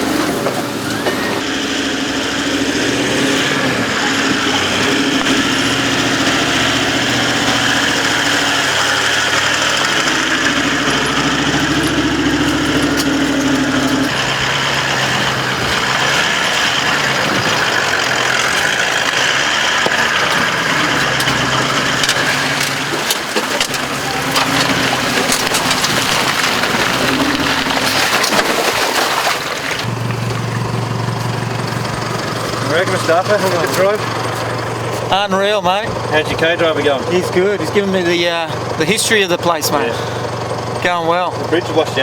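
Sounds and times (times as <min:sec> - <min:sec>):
vehicle engine humming: 0:00.0 - 0:42.0.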